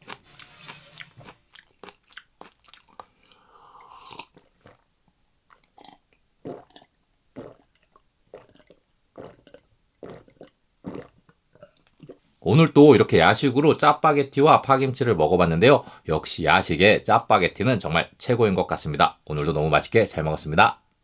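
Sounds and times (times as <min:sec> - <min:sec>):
close chewing and mouth sounds: 0:00.0 - 0:12.3.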